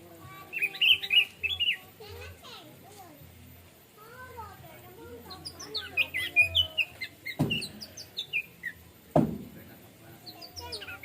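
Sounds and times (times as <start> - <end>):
thrush singing high chirps: 0.3 - 2.2, 5.0 - 11.0
sharp knocks: 7.4 - 7.8, 9.1 - 9.8.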